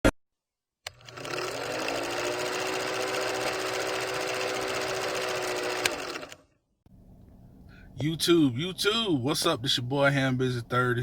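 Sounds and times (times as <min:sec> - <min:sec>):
small motor whining: 0:00.9 - 0:06.4.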